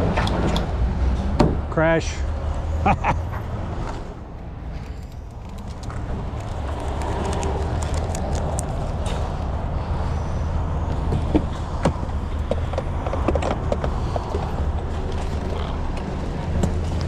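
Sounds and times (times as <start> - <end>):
cab clicks and creaks: 0.0 - 1.6, 4.7 - 9.6, 10.9 - 17.0
road and engine rumble: 0.0 - 17.0.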